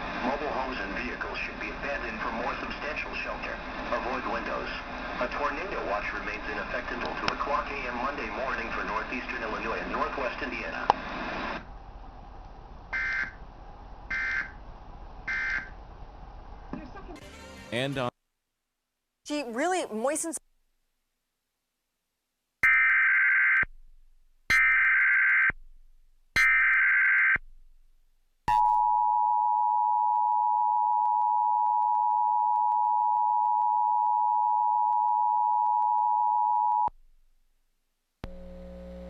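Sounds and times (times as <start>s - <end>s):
low hum: 38.2s - 39.0s.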